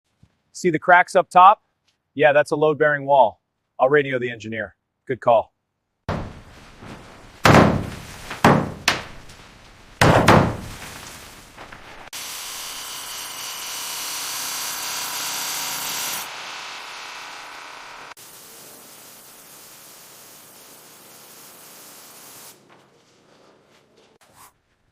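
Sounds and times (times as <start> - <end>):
heavy thuds on wood: 6.1 - 12.1
steady hiss: 18.2 - 22.6.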